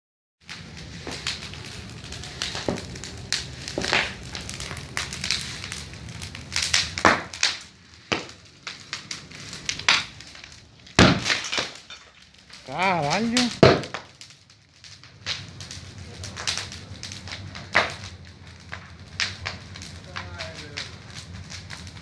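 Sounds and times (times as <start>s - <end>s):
bonfire crackling: 0.4s - 22.0s
loud sharp crack: 0.5s - 22.0s
sharp pops and snaps: 0.5s - 22.0s.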